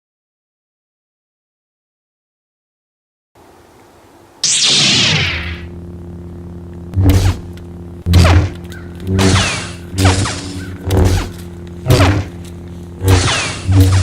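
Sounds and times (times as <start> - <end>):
lightsaber electric hum: 3.4 - 14.0
lightsaber swing swooshes: 4.4 - 5.7, 7.0 - 7.5, 8.1 - 12.4, 13.0 - 14.0.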